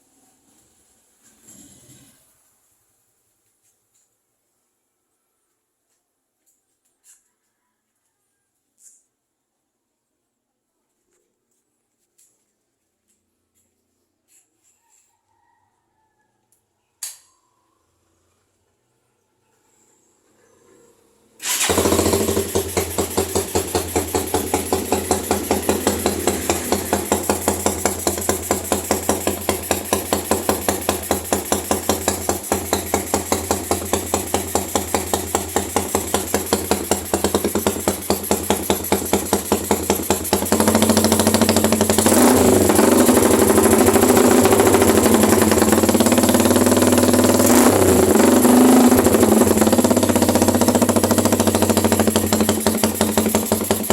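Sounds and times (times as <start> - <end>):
motorcycle engine idling: 21.4 - 53.9.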